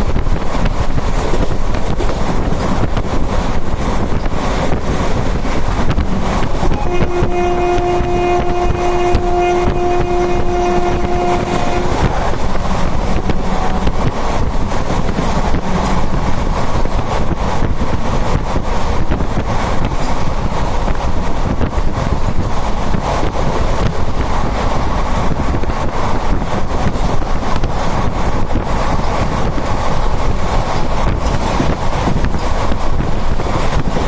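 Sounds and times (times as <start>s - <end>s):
train wheels rumbling on track: 0.0s - 34.0s
wind buffeting microphone: 0.0s - 34.0s
long train horn blast: 5.9s - 16.6s.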